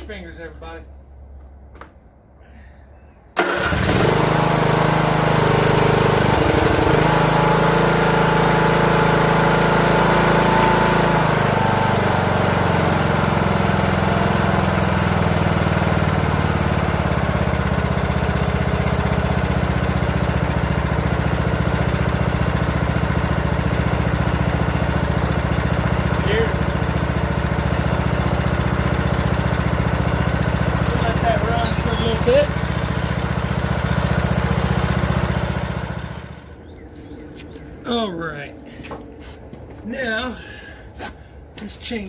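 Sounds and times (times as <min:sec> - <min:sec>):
mower engine starting and running: 0:03.4 - 0:36.8.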